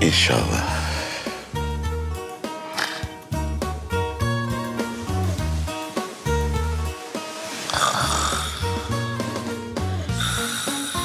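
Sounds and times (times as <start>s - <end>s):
music with plucked strings and bass: 0.0s - 11.0s
loud snore: 7.7s - 9.2s, 10.1s - 11.0s.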